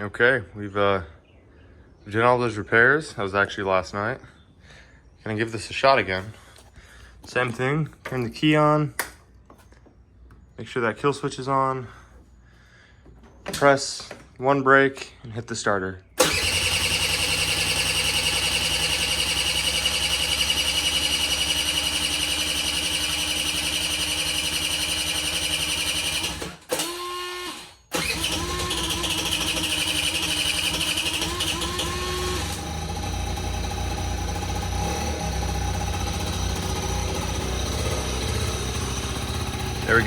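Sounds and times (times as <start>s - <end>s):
scooter engine idling: 16.2s - 26.4s, 27.9s - 40.0s
scooter starter cranking: 16.2s - 40.0s.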